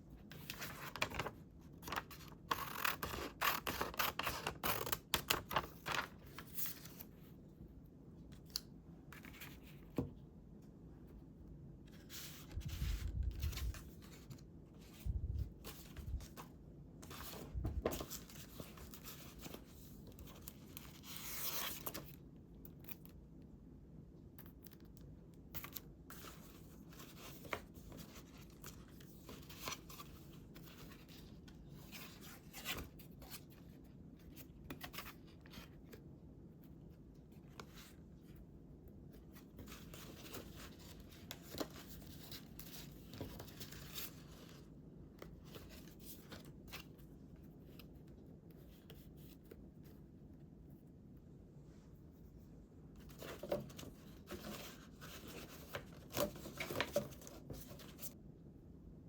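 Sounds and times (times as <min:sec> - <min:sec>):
paper rustling: 0:00.3 - 0:07.2, 0:11.9 - 0:22.2, 0:53.0 - 0:58.2.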